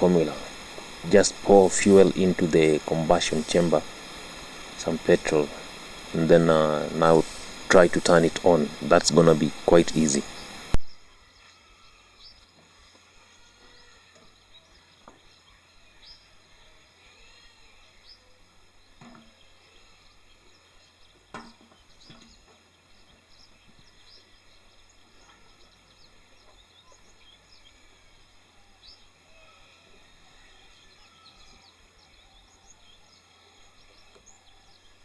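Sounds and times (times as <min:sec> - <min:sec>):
bird chirps: 0:00.0 - 0:11.0.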